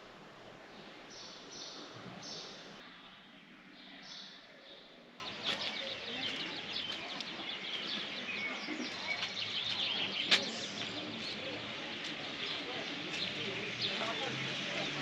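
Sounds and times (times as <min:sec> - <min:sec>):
outdoor background noise: 0:00.0 - 0:15.0
birds chirping and singing: 0:05.2 - 0:15.0.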